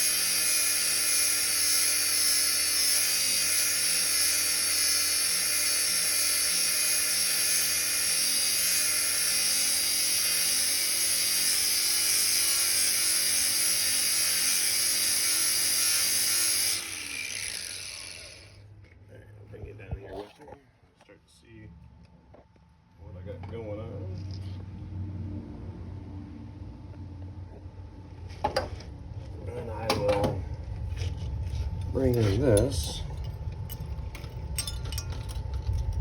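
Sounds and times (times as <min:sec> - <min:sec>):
electric grinder whining: 0:00.0 - 0:18.7
grinder spinning down: 0:00.0 - 0:18.7.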